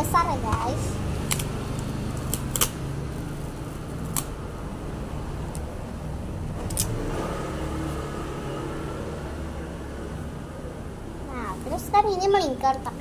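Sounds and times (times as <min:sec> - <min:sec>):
adhesive tape clicks and crackles: 0:01.2 - 0:03.3, 0:03.9 - 0:04.4.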